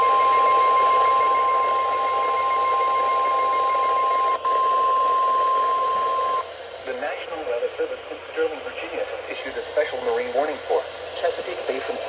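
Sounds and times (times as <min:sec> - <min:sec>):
steady high alarm tone: 0:00.0 - 0:06.4
radio static hiss: 0:06.9 - 0:12.0.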